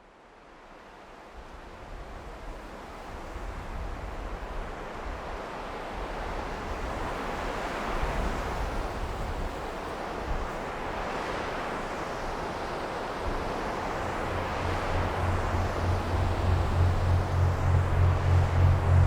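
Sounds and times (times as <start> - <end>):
rough rushing wind: 12.5 - 19.0.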